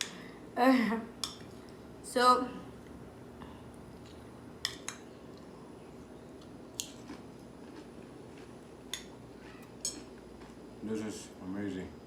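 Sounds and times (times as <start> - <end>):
crunchy biting and chewing: 6.8 - 10.7.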